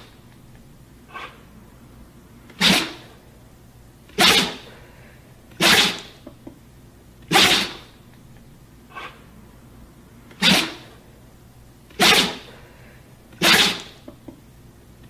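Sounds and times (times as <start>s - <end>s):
dog sneezing: 1.1s - 1.4s, 2.5s - 3.2s, 4.1s - 4.8s, 5.5s - 6.2s, 7.3s - 7.9s, 8.9s - 9.2s, 10.3s - 11.0s, 11.9s - 12.6s, 13.3s - 14.0s.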